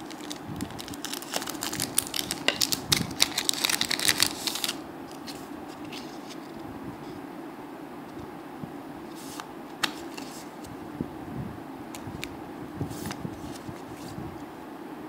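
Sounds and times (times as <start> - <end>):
foil wrapper crinkling and tearing: 0.0 - 4.8.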